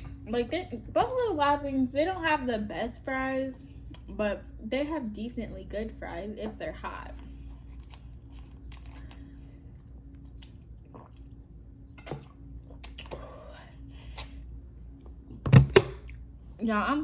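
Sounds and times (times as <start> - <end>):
steady low hum: 0.0 - 17.0
wet chewing: 6.4 - 15.3
food handling clicks and squishes: 7.1 - 10.7.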